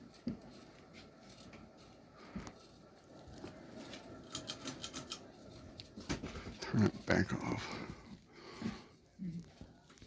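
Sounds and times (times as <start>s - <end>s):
ceiling fan whirring: 0.0s - 10.0s.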